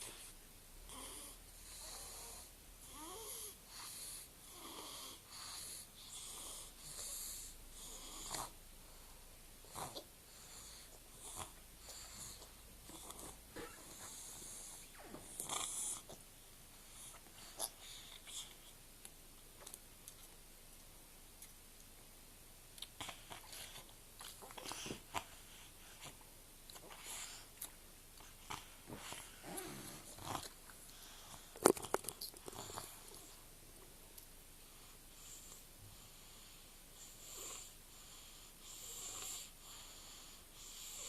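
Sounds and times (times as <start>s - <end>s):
boy snuffling breaths: 28.4s - 31.6s.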